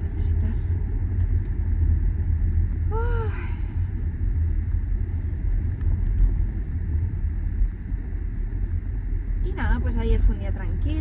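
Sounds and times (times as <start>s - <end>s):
car cabin rumble: 0.0s - 6.9s.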